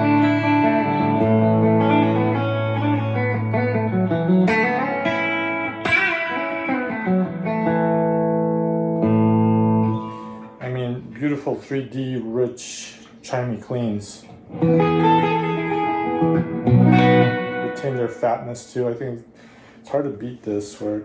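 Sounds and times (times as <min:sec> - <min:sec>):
clean electric guitar chords: 0:00.0 - 0:10.6, 0:14.4 - 0:18.2.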